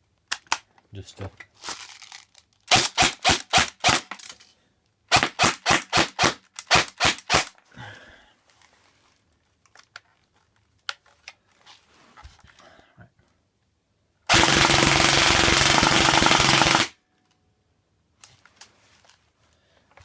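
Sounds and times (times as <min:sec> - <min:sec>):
airsoft rifle firing single shots: 0:14.3 - 0:17.0.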